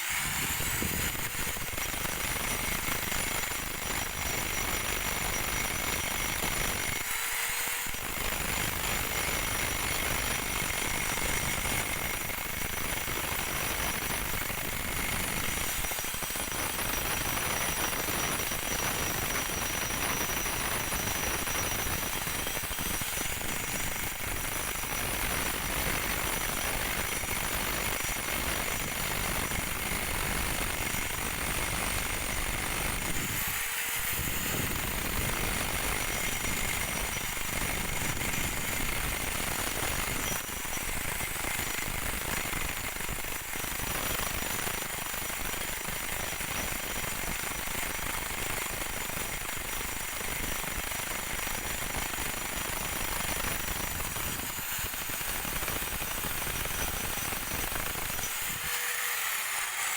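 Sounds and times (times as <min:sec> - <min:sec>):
power tool motor whine: 0:00.0 - 0:59.9.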